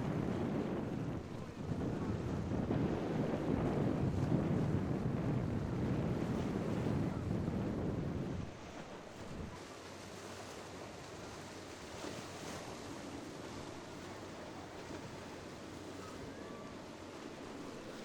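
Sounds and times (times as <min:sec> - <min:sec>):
wind buffeting microphone: 0:00.0 - 0:09.6
waves and surf: 0:00.0 - 0:18.0.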